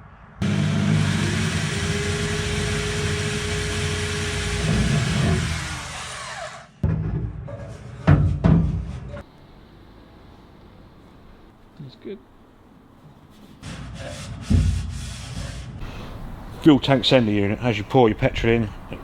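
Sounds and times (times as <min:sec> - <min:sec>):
electric drill boring through steel: 0:00.4 - 0:06.8.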